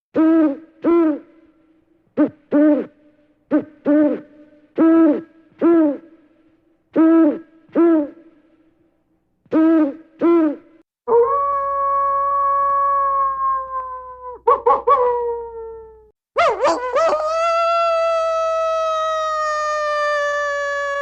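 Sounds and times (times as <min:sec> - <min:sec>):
owl hooting: 0:02.2 - 0:06.2, 0:07.0 - 0:08.2
wolf howling: 0:11.1 - 0:21.0.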